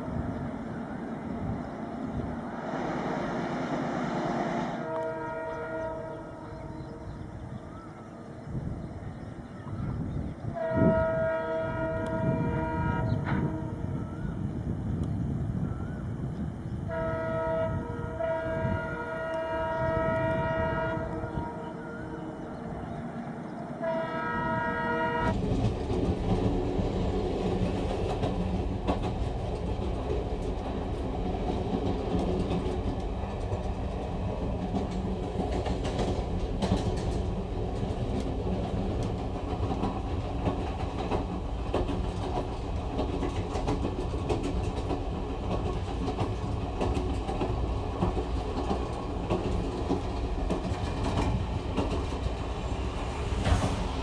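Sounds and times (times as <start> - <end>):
train rumbling on rails: 0.0 - 54.0
train horn: 3.4 - 7.5, 10.4 - 14.3, 16.8 - 25.4
wheels clicking over rail joints: 25.2 - 54.0.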